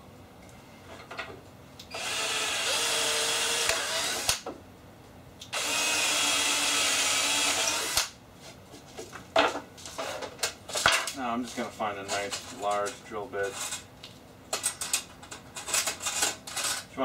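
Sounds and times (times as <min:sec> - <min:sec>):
power drill drilling into wood: 0:01.9 - 0:04.4, 0:05.5 - 0:08.1.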